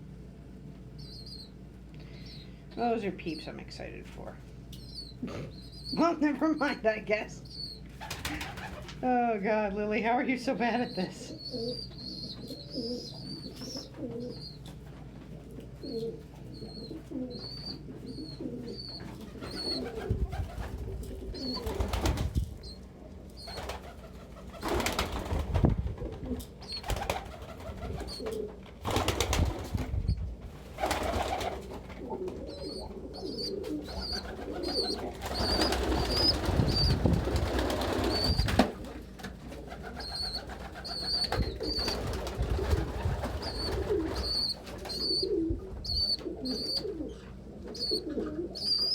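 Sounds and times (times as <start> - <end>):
high-pitched peeping: 0.9 - 3.6, 4.7 - 8.8, 10.4 - 14.9, 15.8 - 25.1, 26.6 - 27.2, 27.9 - 28.4, 32.1 - 38.6, 39.7 - 48.9
pigeons cooing: 4.8 - 6.1, 10.9 - 25.2, 26.0 - 29.7, 30.6 - 48.9.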